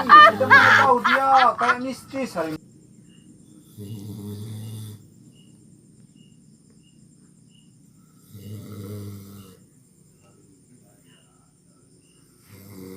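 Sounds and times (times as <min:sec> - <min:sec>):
crickets chirping: 0:00.0 - 0:12.9
person snoring: 0:03.7 - 0:05.1, 0:08.2 - 0:09.6, 0:12.4 - 0:12.9.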